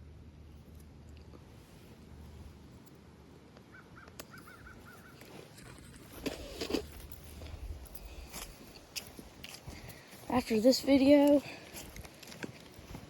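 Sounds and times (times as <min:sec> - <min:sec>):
bird calling: 0:03.7 - 0:05.4.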